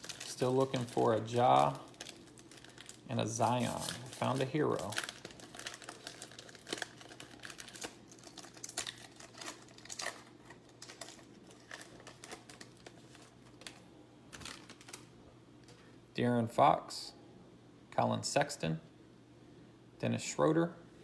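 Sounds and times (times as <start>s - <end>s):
cards clicking and crinkling: 0.0s - 15.1s
faint steady hum: 0.0s - 21.0s.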